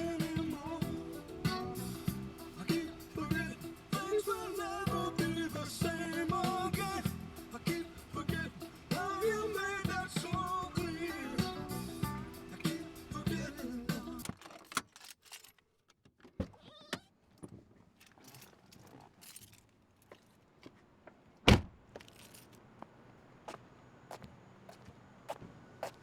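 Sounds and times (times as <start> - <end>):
car stereo music with singing: 0.0 - 14.4
keys jangling: 14.2 - 15.6, 18.0 - 20.4, 22.0 - 22.6.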